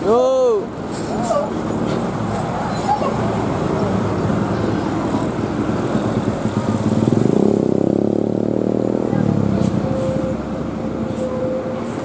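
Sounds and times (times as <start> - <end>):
bus diesel engine under load: 0.0 - 12.0.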